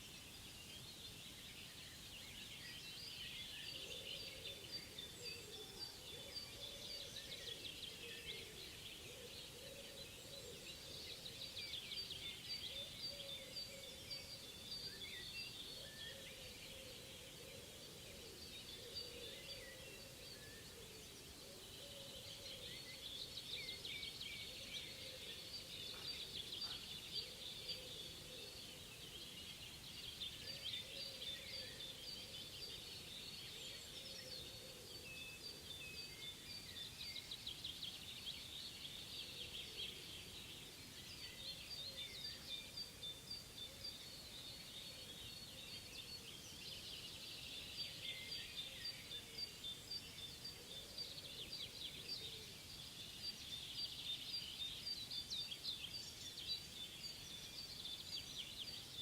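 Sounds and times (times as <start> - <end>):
many small birds singing: 0.0 - 59.0.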